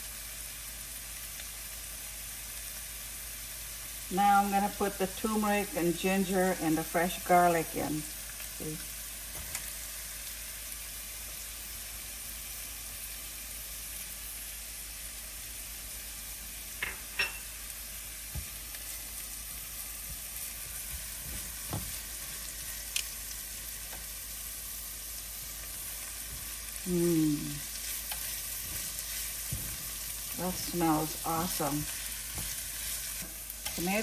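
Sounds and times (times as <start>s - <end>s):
food sizzling in oil: 0.0s - 34.0s
stirring clicks and knocks in pan: 27.6s - 33.9s.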